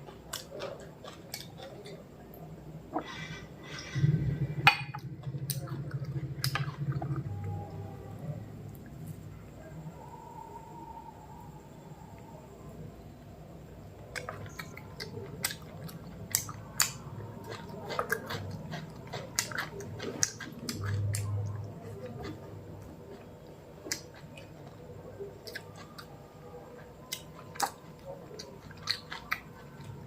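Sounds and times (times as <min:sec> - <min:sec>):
person chewing food: 0:00.0 - 0:02.1, 0:14.0 - 0:30.0
low hum: 0:03.0 - 0:14.1.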